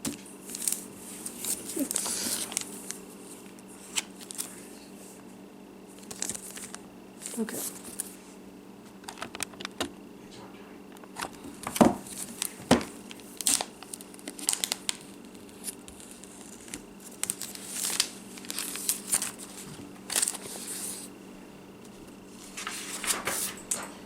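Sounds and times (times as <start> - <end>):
packaging crinkling and tearing: 0.0 - 4.6, 6.0 - 8.2, 8.9 - 9.9, 11.0 - 21.1
small clicks and taps: 9.0 - 9.9.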